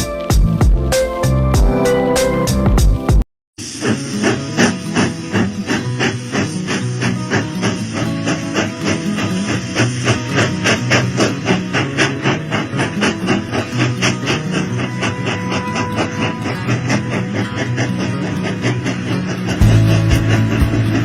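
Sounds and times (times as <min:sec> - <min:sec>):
background music with bass line: 0:00.0 - 0:03.2, 0:19.6 - 0:21.0.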